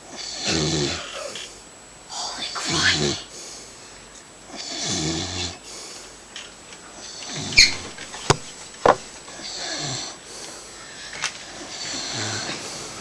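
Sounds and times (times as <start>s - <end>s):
man snoring: 0.0s - 1.5s, 2.1s - 3.4s, 4.5s - 5.7s, 7.0s - 7.6s, 9.4s - 10.2s, 11.6s - 13.0s.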